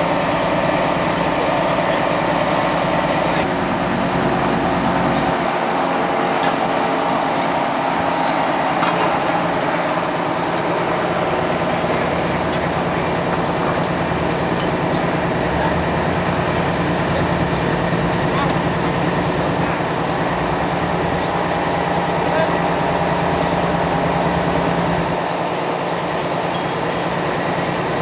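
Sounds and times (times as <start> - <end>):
small locomotive engine running: 0.0 - 28.0
light metallic clinks: 8.0 - 9.2, 11.8 - 14.8.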